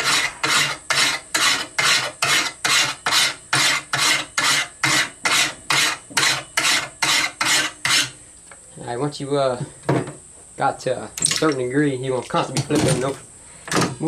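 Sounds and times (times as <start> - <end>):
file rasping on steel blade: 0.0 - 8.2.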